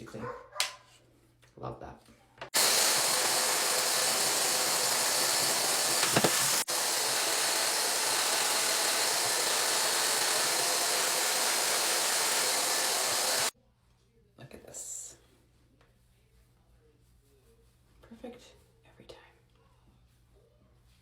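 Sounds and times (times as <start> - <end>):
blow dryer running: 2.6 - 13.5.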